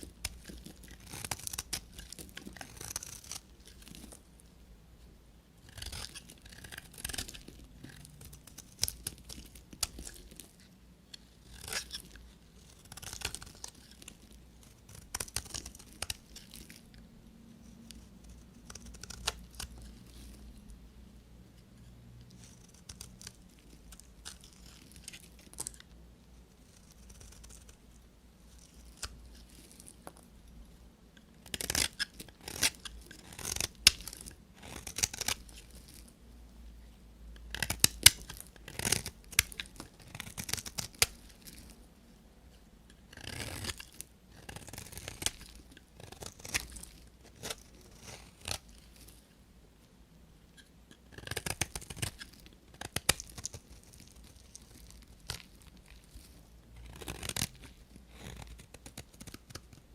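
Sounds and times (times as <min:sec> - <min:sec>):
knife cutting soap: 0:00.0 - 0:04.3, 0:05.6 - 0:16.8, 0:31.4 - 0:36.1, 0:37.5 - 0:41.7, 0:42.9 - 0:49.1.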